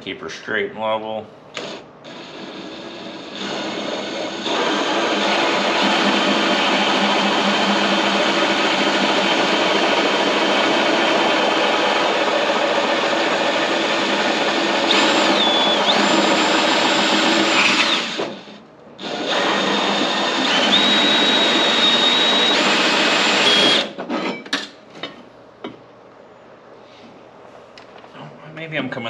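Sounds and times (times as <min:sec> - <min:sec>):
power drill cutting sheet metal: 0:01.6 - 0:24.0
high squeal: 0:15.2 - 0:16.5.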